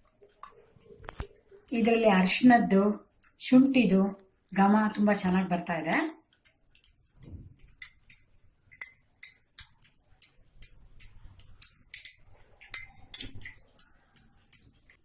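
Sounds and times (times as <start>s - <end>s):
spoon clinking in glass: 11.0s - 14.7s.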